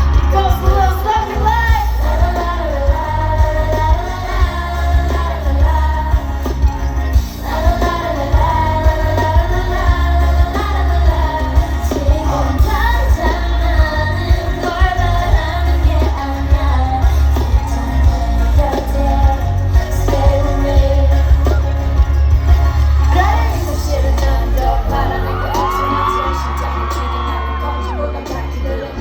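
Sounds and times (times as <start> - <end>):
heavy bass: 0.0 - 29.0
pop song with sung vocals: 0.0 - 29.0.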